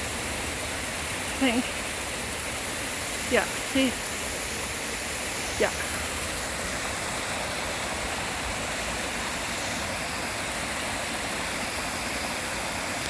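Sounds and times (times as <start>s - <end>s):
waterfalls rushing: 0.0s - 13.0s.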